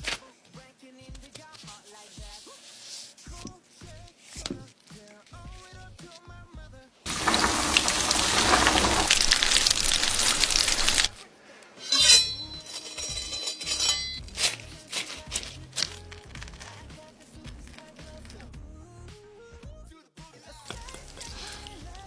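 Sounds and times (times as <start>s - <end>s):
kitchenware clinking and knocking: 7.1s - 11.2s, 11.8s - 14.3s
loud crackling hiss: 7.1s - 11.2s.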